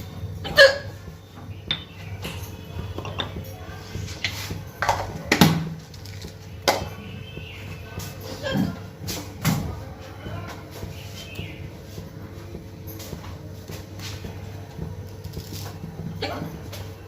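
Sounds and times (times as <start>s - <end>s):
dishes and utensils clinking: 1.6s - 7.0s.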